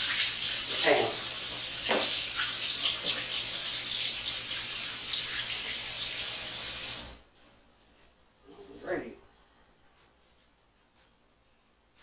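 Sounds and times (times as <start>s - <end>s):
tap water running: 0.0s - 7.3s.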